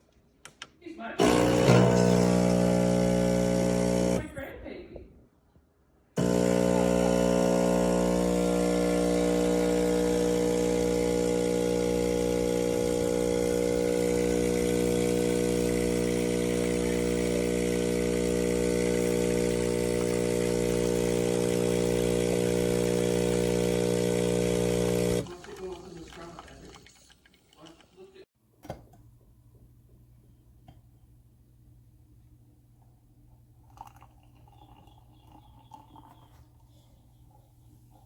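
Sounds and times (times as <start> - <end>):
espresso machine pump buzzing: 1.2 - 4.3, 6.2 - 26.1.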